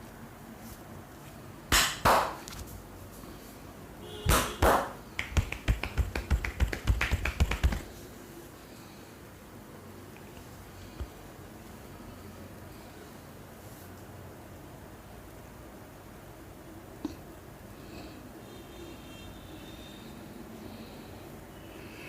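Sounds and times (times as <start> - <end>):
hand slaps on head: 1.7 - 2.6, 4.3 - 7.8
rapid hand taps: 4.3 - 7.9.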